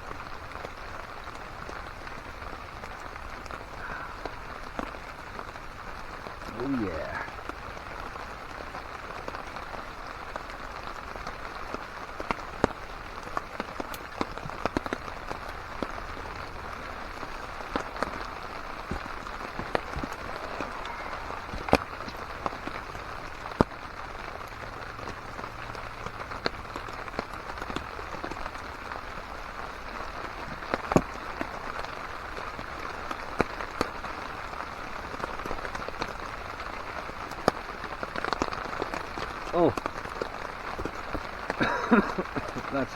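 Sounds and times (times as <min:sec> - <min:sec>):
rain pattering on a tarp: 0:00.0 - 0:42.9
sharp ticks and pops: 0:11.2 - 0:30.1.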